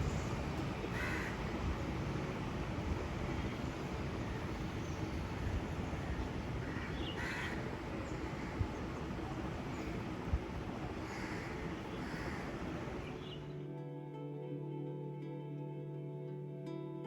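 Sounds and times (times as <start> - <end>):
low background rumble: 0.0 - 13.5
crows cawing: 0.9 - 1.6, 5.9 - 10.0, 10.8 - 13.3.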